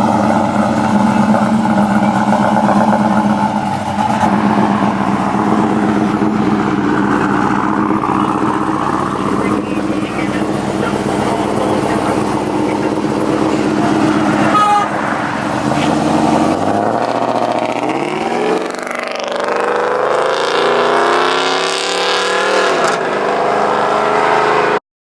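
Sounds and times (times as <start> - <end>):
car engine accelerating: 0.0 - 24.8.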